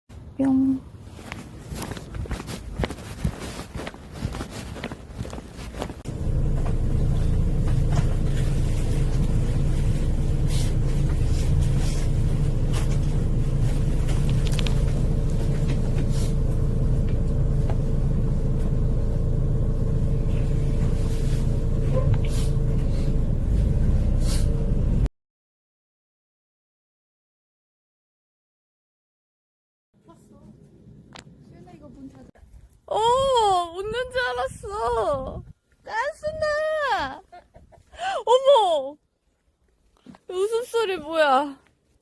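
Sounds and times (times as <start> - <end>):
vehicle engine rumbling: 0.1 - 25.1.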